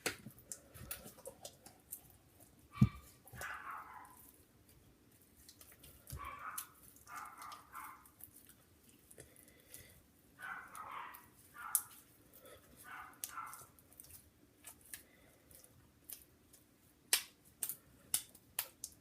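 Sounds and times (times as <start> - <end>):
slime squelching: 0.0 - 19.0.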